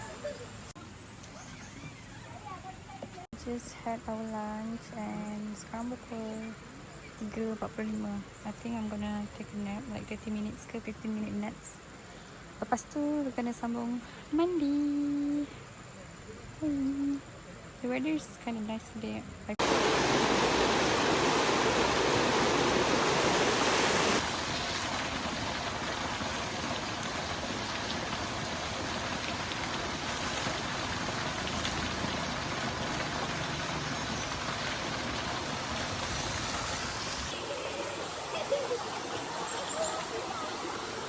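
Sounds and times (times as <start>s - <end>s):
stream flowing: 19.6s - 41.0s.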